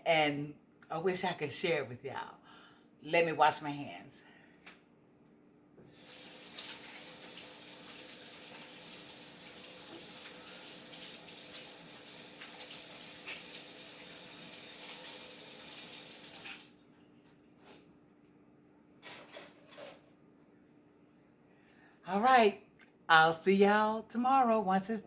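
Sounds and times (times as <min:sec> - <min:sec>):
hands washing under water: 0:05.9 - 0:14.0
faucet running water: 0:05.9 - 0:16.8.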